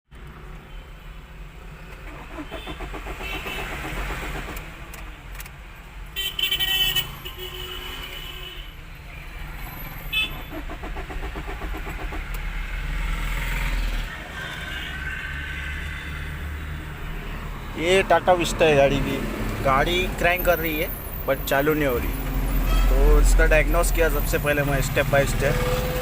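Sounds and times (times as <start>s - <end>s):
starter motor cranking engine: 1.9s - 5.0s, 10.1s - 14.0s
car horn: 2.3s - 4.0s, 6.2s - 8.8s, 10.0s - 10.6s, 14.2s - 16.4s, 22.5s - 24.2s.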